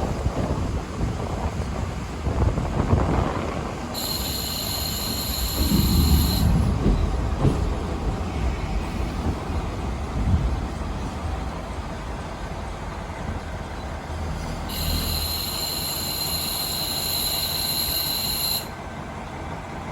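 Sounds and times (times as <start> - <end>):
diesel railcar rumbling: 0.0 - 19.9
high steady squeal: 3.9 - 6.6, 14.7 - 18.8.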